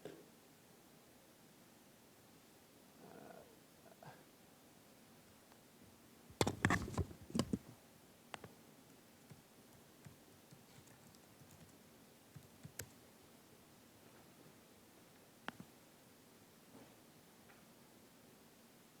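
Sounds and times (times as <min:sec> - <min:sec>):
computer keyboard clicking: 0:06.4 - 0:07.6, 0:10.0 - 0:11.7, 0:12.4 - 0:12.9.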